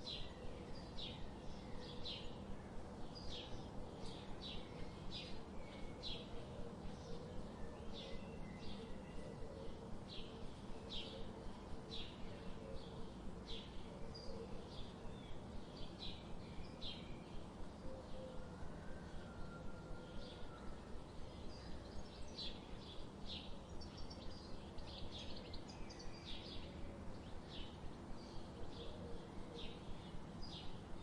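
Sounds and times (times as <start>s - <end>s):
low background noise: 0.0s - 31.0s
small birds chirping: 21.1s - 31.0s.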